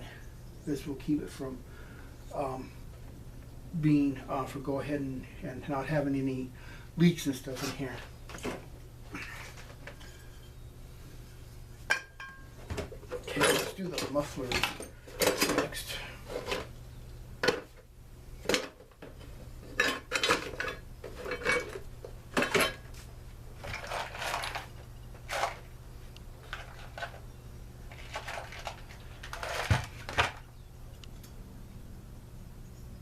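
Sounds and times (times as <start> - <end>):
low steady hum: 0.0 - 33.0
metal parts clinking: 19.7 - 21.8.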